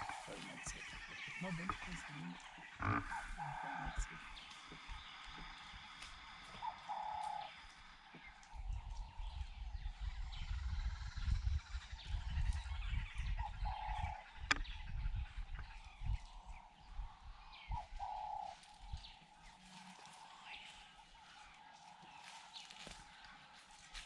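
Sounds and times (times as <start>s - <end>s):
high steady insect-like tones: 0.0s - 12.5s
wild birds calling: 0.0s - 24.0s.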